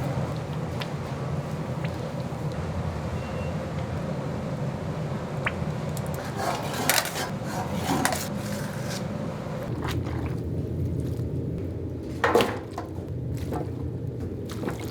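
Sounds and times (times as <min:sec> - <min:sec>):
steady low hum: 0:00.0 - 0:14.9
dishes and utensils clattering: 0:06.1 - 0:09.1.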